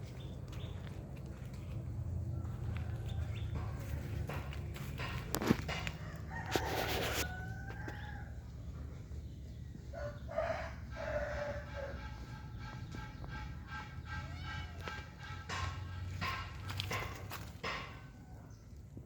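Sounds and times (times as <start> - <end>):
rooster crowing: 5.8 - 8.6, 9.9 - 12.2.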